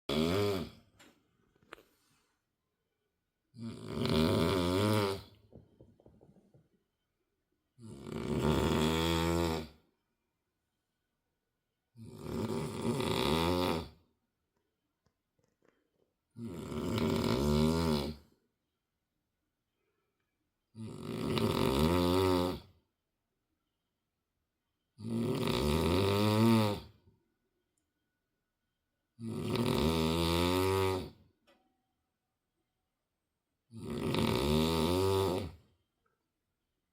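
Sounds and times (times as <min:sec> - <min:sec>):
person snoring loudly: 0:00.1 - 0:00.8, 0:03.5 - 0:05.4, 0:07.8 - 0:09.8, 0:12.0 - 0:14.0, 0:16.4 - 0:18.3, 0:20.7 - 0:22.8, 0:25.0 - 0:27.0, 0:29.2 - 0:31.2, 0:33.7 - 0:35.6.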